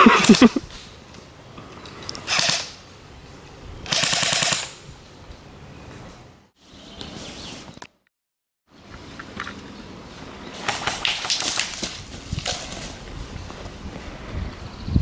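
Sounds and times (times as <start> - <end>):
airsoft rifle full-auto bursts: 2.3 - 2.7, 3.9 - 4.7.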